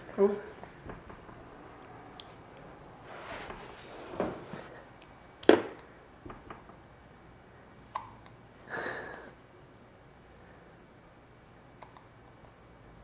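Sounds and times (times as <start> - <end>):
soft breathy sound: 8.6 - 9.6.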